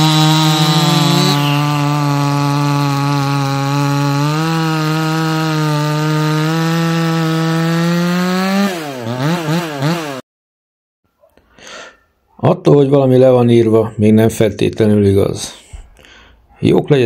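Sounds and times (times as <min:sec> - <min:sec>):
chainsaw sawing wood: 0:00.0 - 0:10.2.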